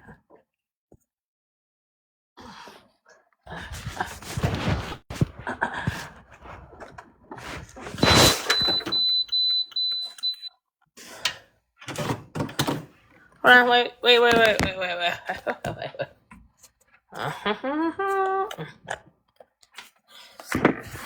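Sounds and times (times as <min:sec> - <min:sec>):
muffled shuffling: 0:03.7 - 0:08.8, 0:14.0 - 0:15.1
high-pitched electronic beeps: 0:08.0 - 0:10.5.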